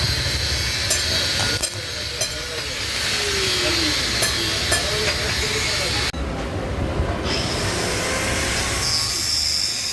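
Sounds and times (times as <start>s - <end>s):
loud steady hiss: 0.0s - 6.1s.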